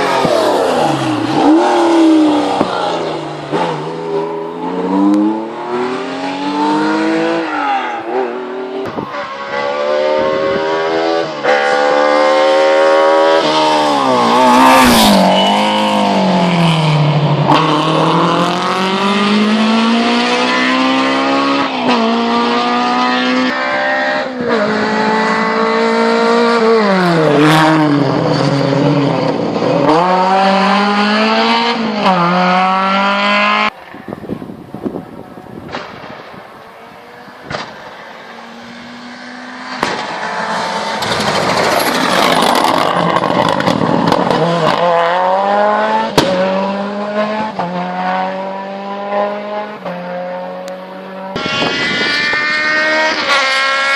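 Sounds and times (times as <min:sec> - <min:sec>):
race car engine revving: 0:00.0 - 0:33.8, 0:36.7 - 0:53.9
sharp crack: 0:35.6 - 0:36.4, 0:37.4 - 0:37.9, 0:39.7 - 0:40.3.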